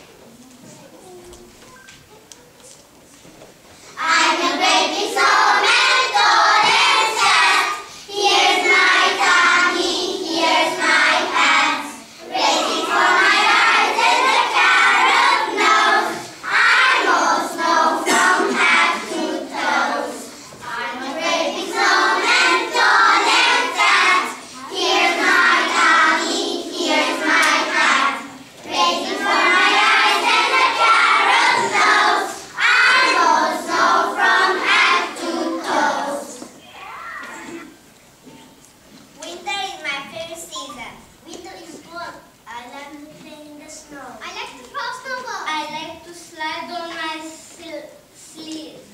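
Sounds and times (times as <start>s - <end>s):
children singing in unison: 4.0s - 36.5s.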